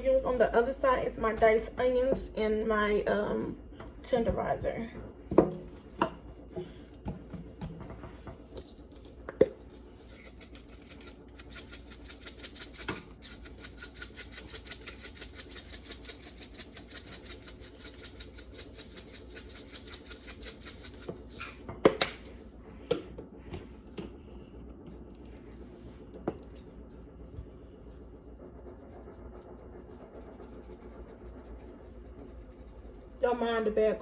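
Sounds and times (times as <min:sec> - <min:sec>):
seasoning shaker rattling: 0:08.5 - 0:21.6.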